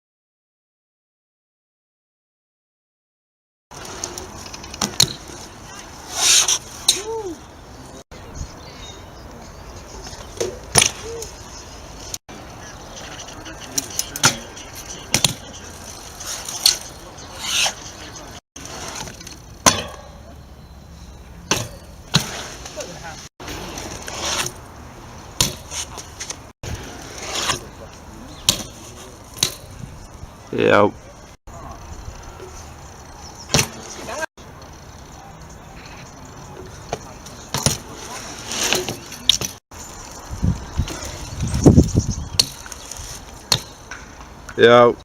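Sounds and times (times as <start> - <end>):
bmx bike being ridden: 3.7 - 7.5, 10.0 - 30.5, 31.1 - 44.5
bike landing clack: 3.8 - 5.5, 10.3 - 11.3, 13.7 - 17.7, 18.6 - 20.3, 21.4 - 22.8, 23.4 - 27.7, 28.4 - 29.8, 32.4 - 34.2, 36.5 - 39.6, 41.8 - 44.4.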